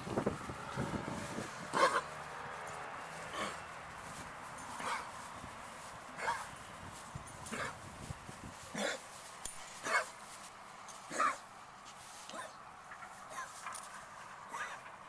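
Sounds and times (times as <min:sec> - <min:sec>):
dog coughing: 0:01.8 - 0:02.1, 0:08.7 - 0:09.0.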